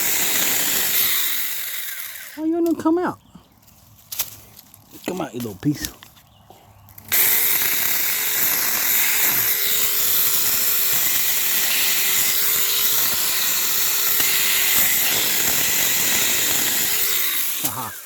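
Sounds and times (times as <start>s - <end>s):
mini chainsaw cutting wood: 0.0s - 2.7s, 7.0s - 18.0s.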